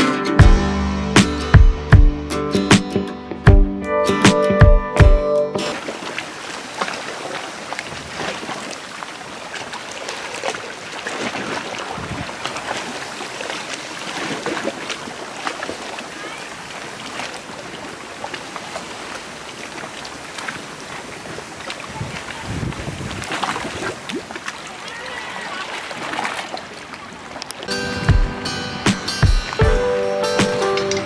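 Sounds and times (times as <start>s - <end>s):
sea water lapping at shore: 5.6s - 31.0s.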